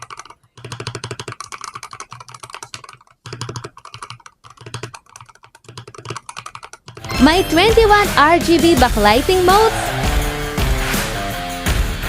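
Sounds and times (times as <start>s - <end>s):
rapid typing on mechanical keyboard: 0.0s - 7.1s.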